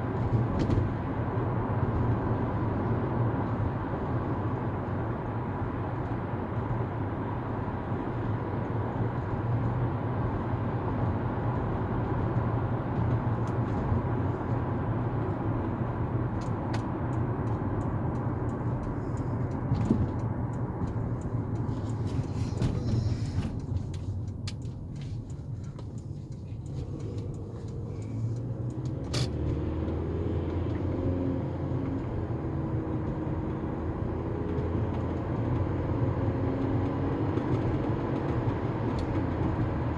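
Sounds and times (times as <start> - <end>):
vehicle rumble in motion: 0.0 - 39.9.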